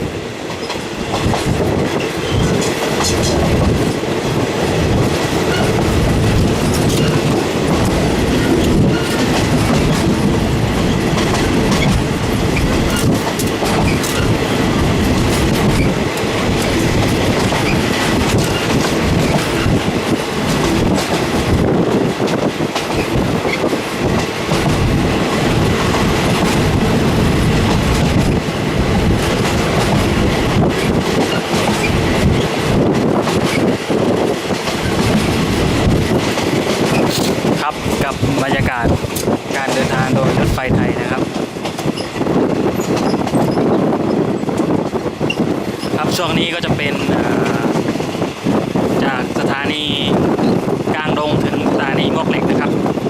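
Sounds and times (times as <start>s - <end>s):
wheels clacking over rail joints: 0.0s - 51.8s
train rumbling at speed: 0.0s - 53.0s.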